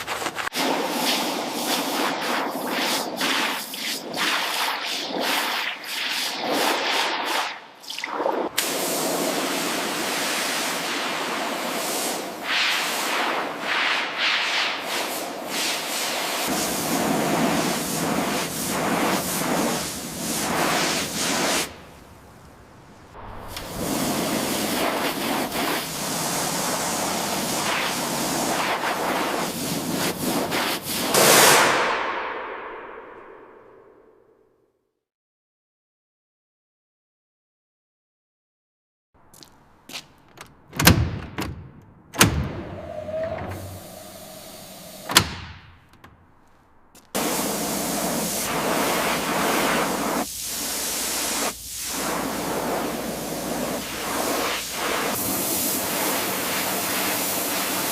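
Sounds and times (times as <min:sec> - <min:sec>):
pressure washer water jetting: 0:00.6 - 0:13.6, 0:14.5 - 0:21.9, 0:23.4 - 0:31.5, 0:43.1 - 0:45.2, 0:47.2 - 0:57.9
steady hissing rush: 0:16.1 - 0:33.4, 0:42.7 - 0:45.2, 0:47.2 - 0:57.9.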